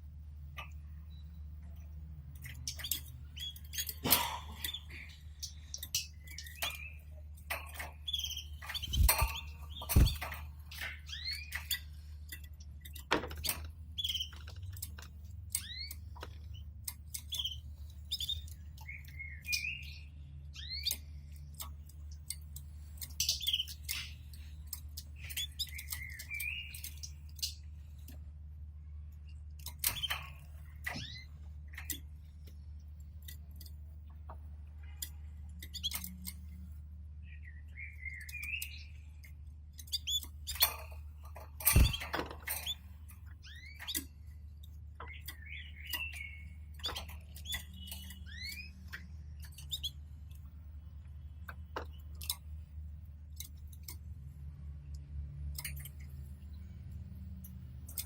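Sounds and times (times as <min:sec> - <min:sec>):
canaries chirping: 0:02.4 - 0:27.8, 0:29.8 - 0:32.6, 0:37.3 - 0:41.0, 0:41.7 - 0:50.2
steady low hum: 0:03.2 - 0:12.9
birds knocking about cage: 0:08.6 - 0:11.7, 0:40.5 - 0:42.8.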